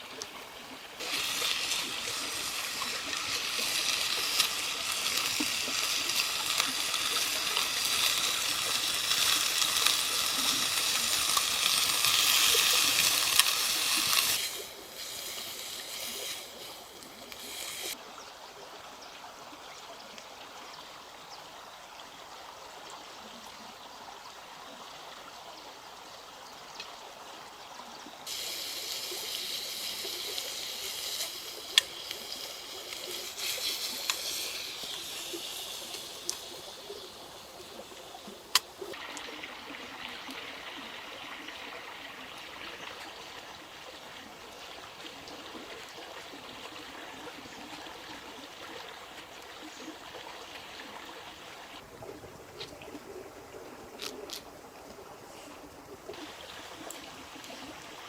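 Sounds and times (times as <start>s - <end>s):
water hissing: 0.0s - 18.0s, 28.3s - 51.8s, 55.2s - 58.0s.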